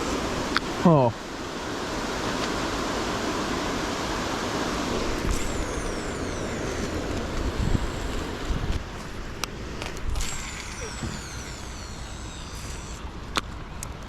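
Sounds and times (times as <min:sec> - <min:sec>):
wind on microphone: 0:04.7 - 0:12.9.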